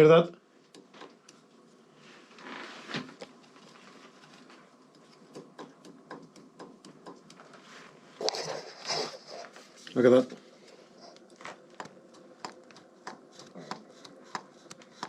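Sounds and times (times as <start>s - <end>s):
metallic clicks and taps: 4.9s - 7.5s.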